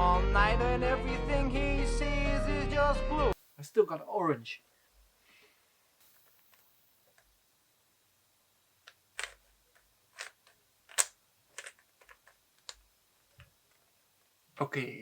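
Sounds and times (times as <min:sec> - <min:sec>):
puzzle cube clicking: 0:08.8 - 0:12.8.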